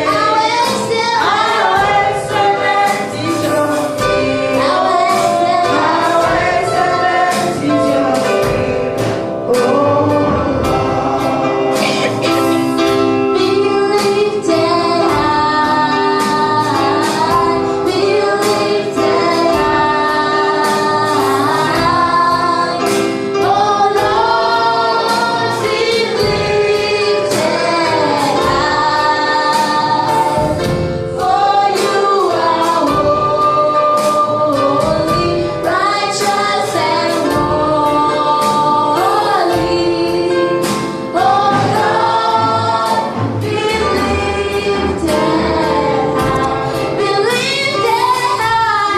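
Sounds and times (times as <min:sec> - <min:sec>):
band playing steady beat: 0:00.0 - 0:48.9
choir singing: 0:00.0 - 0:48.9
woman singing lead: 0:00.0 - 0:48.9.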